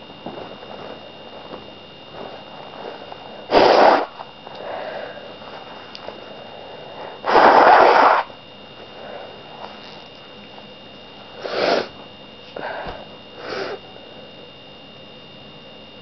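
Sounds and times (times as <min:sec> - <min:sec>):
sniffing and breathing: 0:02.9 - 0:08.2, 0:11.4 - 0:13.9
person sneezing: 0:11.4 - 0:11.9, 0:12.6 - 0:13.8.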